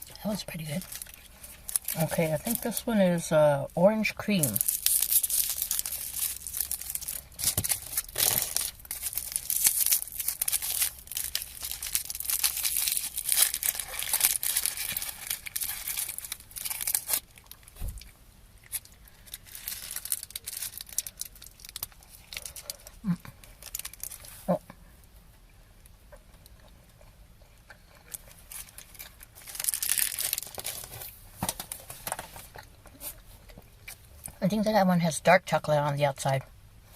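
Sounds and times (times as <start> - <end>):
candy wrapper crinkling: 0.0 - 24.6, 27.8 - 32.3.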